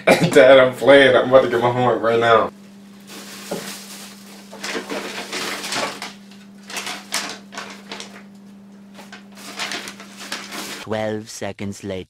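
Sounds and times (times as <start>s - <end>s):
low electrical hum: 0.0s - 12.0s
rustling handling noises: 2.9s - 10.8s.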